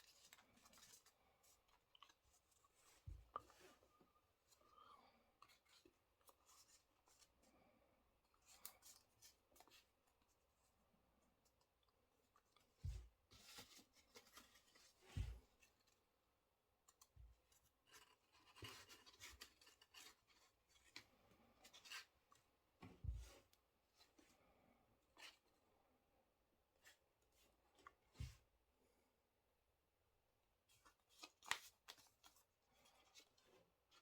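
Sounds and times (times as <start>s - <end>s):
paper rustling and crinkling: 12.4s - 15.8s.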